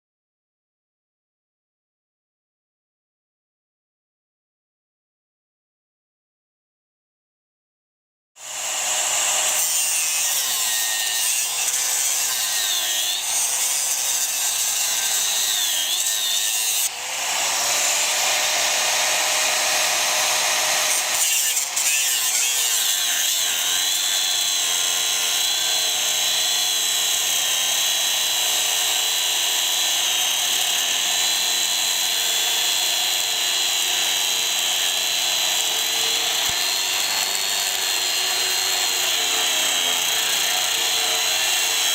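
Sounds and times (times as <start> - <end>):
angle grinder cutting steel: 8.4 - 41.9.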